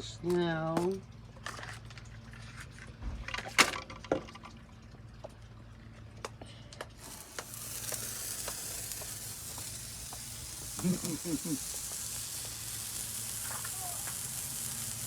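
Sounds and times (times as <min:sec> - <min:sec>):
firework hissing sizzle: 0:07.0 - 0:15.0.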